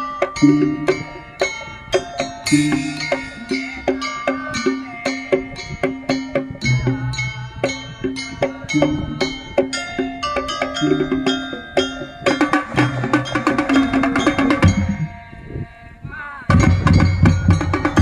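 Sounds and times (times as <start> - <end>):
marching drum band playing: 0.0 - 15.2, 16.5 - 18.0.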